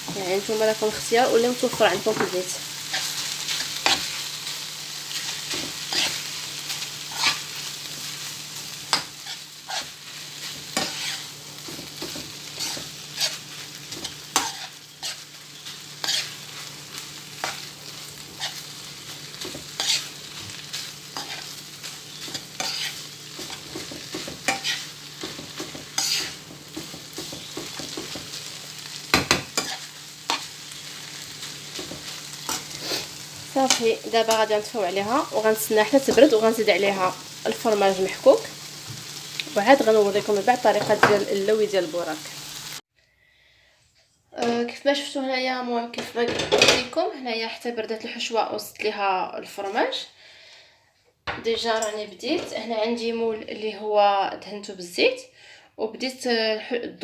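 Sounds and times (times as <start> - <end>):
meat sizzling in a frying pan: 0.0 - 42.9
utensil scraping and knocking on pan: 10.5 - 15.2, 22.2 - 28.4, 29.1 - 30.5, 40.7 - 41.3.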